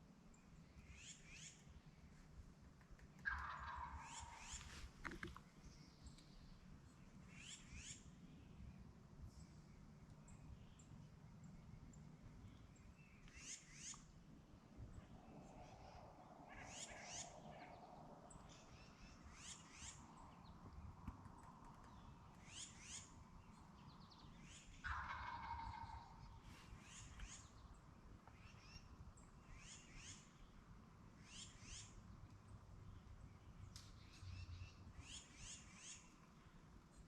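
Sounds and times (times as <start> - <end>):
songbirds chirping: 0.0 - 37.0
turkey gobbling: 3.2 - 5.3, 24.8 - 26.7.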